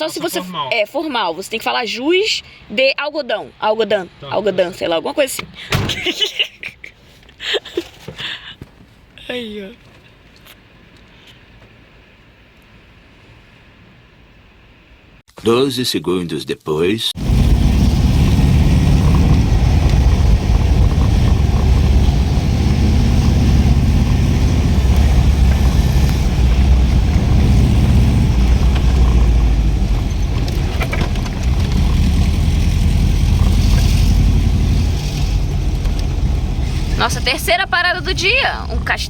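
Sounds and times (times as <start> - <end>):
van engine and road rumble: 17.2 - 39.0.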